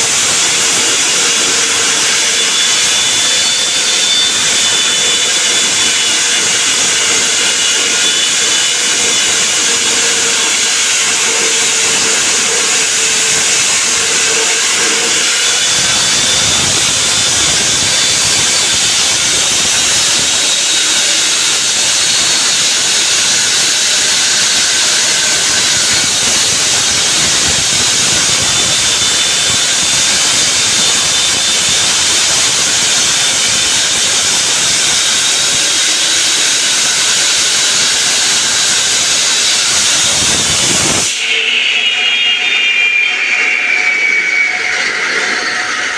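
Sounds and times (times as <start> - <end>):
saw grinding concrete: 0.0 - 45.9.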